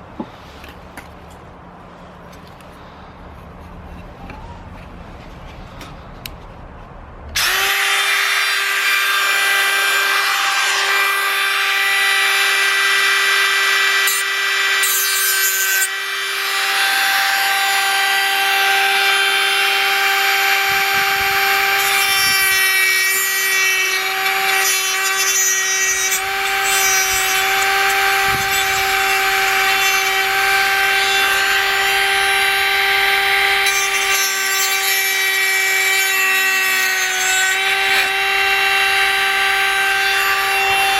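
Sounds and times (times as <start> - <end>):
rotary tool whining: 7.4 - 40.9.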